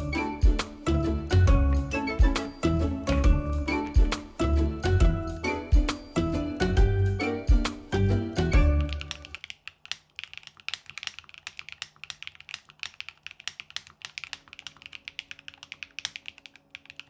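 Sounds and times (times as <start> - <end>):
fast typing on mechanical keyboard: 9.0 - 17.0.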